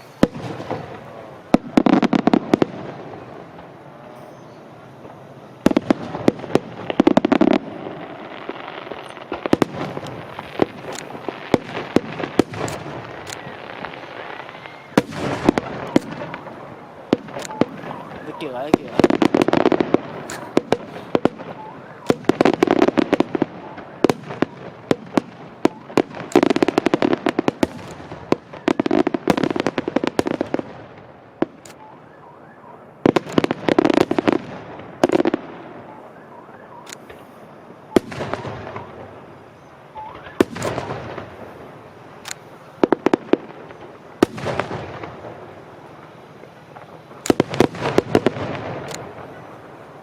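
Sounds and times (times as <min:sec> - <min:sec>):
firework shells bursting: 0:00.0 - 0:32.0.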